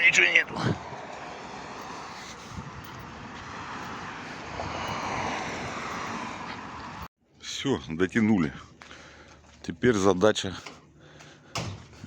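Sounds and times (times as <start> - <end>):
tow truck engine and road noise: 0.0 - 7.1, 8.4 - 12.0.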